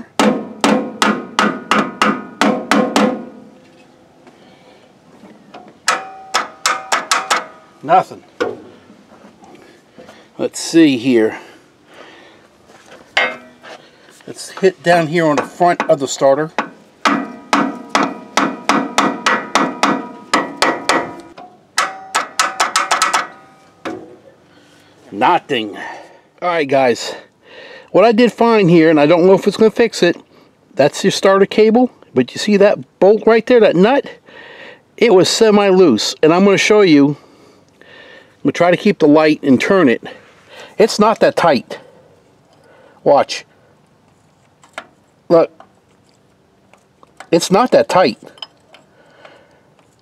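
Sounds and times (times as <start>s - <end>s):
hammer striking metal: 0.2s - 3.6s, 5.8s - 7.8s, 13.2s - 13.7s, 16.6s - 24.2s.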